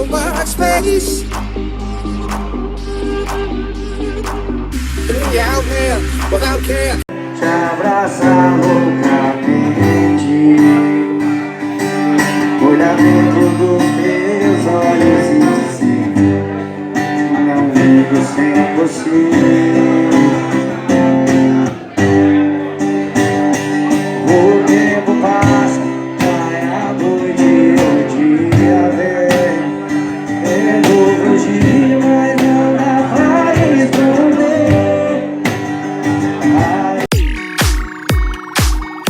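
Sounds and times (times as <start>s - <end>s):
electronic beat with heavy bass: 0.0s - 7.0s, 37.1s - 39.0s
guitar-led song: 0.0s - 39.0s.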